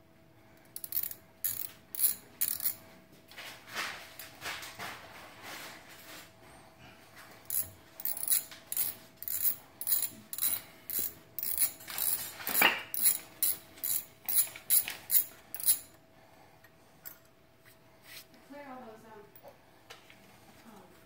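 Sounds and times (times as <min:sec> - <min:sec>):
ratchet wrench clicking: 0:00.8 - 0:02.8, 0:07.5 - 0:12.3, 0:12.9 - 0:15.9.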